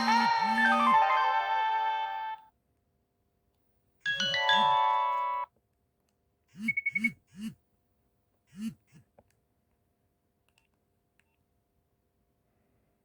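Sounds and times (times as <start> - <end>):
mobile phone ringtone: 0.0 - 2.4, 4.1 - 5.5
brief beep: 6.7 - 7.2.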